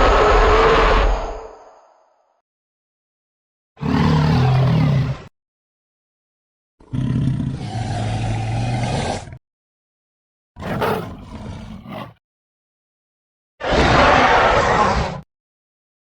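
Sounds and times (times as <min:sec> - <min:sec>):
monster roar: 0:00.0 - 0:01.4, 0:03.8 - 0:05.3, 0:06.8 - 0:09.4, 0:13.6 - 0:15.2.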